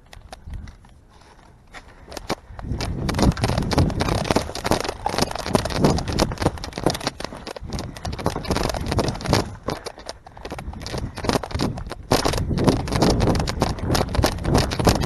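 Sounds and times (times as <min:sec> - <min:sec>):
handling noise: 0:00.0 - 0:15.0
heavy running footsteps: 0:01.3 - 0:15.0.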